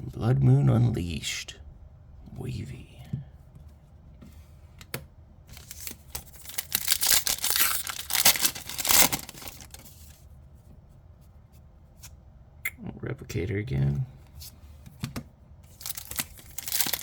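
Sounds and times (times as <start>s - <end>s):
foil wrapper crinkling and tearing: 5.5s - 10.2s, 15.7s - 17.0s.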